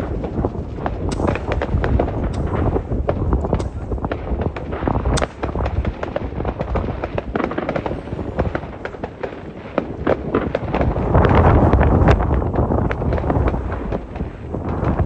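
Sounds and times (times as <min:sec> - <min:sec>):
low rumble: 0:00.0 - 0:07.3
fireworks bangs and crackling: 0:00.0 - 0:15.0
sharp firework crack: 0:00.0 - 0:15.0.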